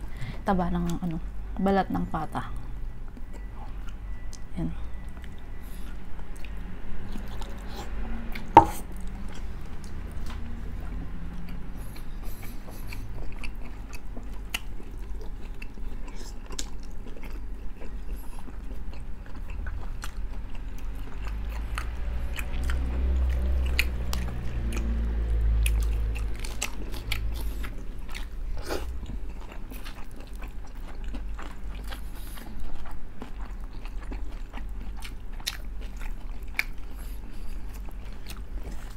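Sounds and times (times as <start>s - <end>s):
chewing crispy pork skin: 3.1s - 38.9s.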